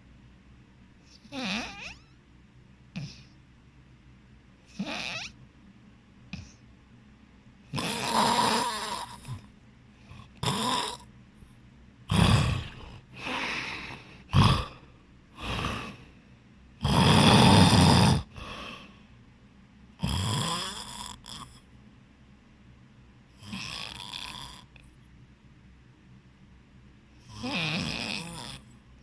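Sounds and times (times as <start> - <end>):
person snoring loudly: 1.2 - 2.0, 3.0 - 3.2, 4.7 - 5.3, 7.7 - 9.4, 10.1 - 11.0, 12.1 - 14.8, 15.4 - 16.1, 16.8 - 18.8, 20.0 - 21.6, 23.4 - 24.8, 27.2 - 28.7
quiet breaths: 2.8 - 3.9, 6.2 - 6.9, 7.5 - 21.9, 26.7 - 29.0.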